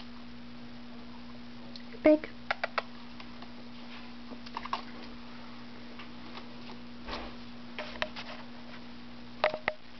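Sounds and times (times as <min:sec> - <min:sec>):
steady low hum: 0:00.0 - 0:09.9.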